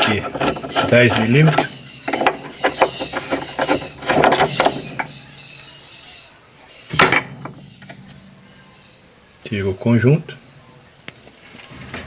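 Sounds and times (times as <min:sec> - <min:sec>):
wrench metallic clicks and scrapes: 0:00.0 - 0:05.1.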